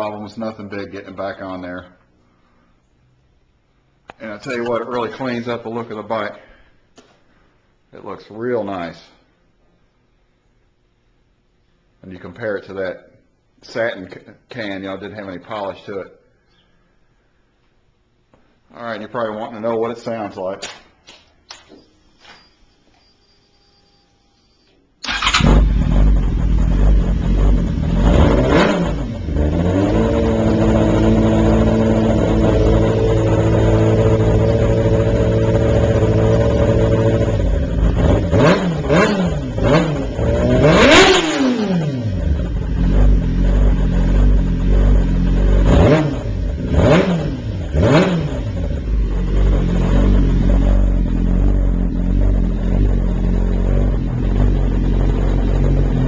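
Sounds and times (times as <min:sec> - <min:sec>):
motorcycle engine idling and revving: 0:25.1 - 0:56.0.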